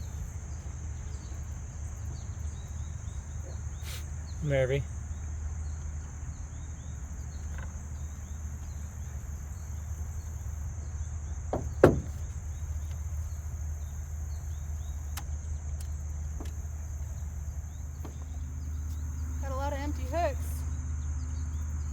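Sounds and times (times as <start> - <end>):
faint chirps: 0.0 - 11.0
high insect drone: 0.0 - 21.9
sharp knock: 11.6 - 12.2.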